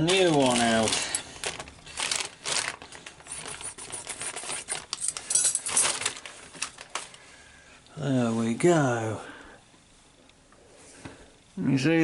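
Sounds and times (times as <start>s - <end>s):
packaging rustling: 0.0s - 7.2s.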